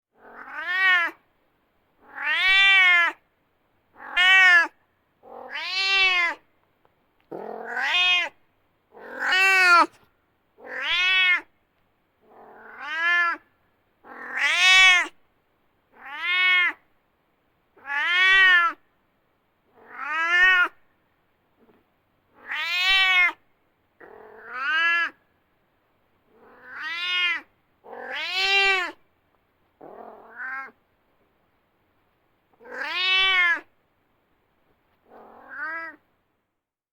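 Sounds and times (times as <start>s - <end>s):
cat meowing: 0.2s - 1.2s, 2.0s - 3.2s, 4.0s - 6.4s, 7.3s - 8.4s, 9.0s - 10.0s, 10.6s - 11.5s, 12.3s - 13.4s, 14.1s - 15.2s, 16.0s - 16.8s, 17.8s - 18.8s, 19.8s - 20.8s, 22.4s - 23.4s, 24.0s - 25.2s, 26.4s - 29.0s, 29.9s - 30.8s, 32.6s - 33.7s, 35.1s - 36.0s.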